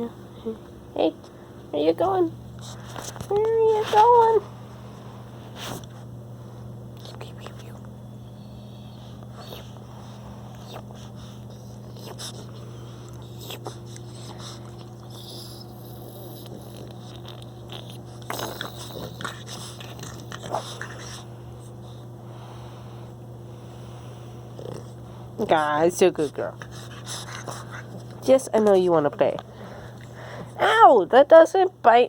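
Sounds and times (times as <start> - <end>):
heater hum: 0.0 - 32.0
puppy mouthing and scuffling: 2.0 - 4.6.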